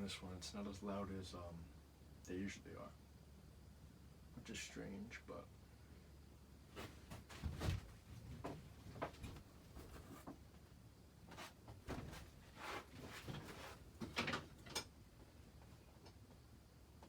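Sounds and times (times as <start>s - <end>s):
light knocks and rustles: 6.8s - 10.4s, 11.3s - 14.8s.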